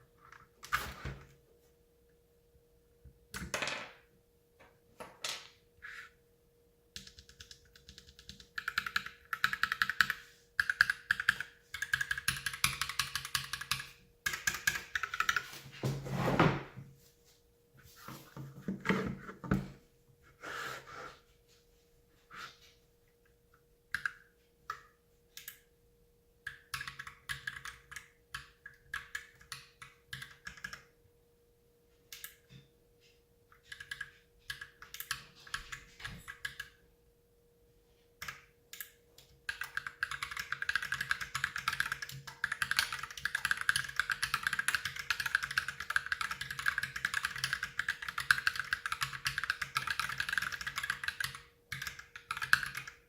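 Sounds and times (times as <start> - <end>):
mechanical keyboard typing: 7.0 - 15.5, 26.5 - 30.9, 33.6 - 36.8, 38.2 - 53.0.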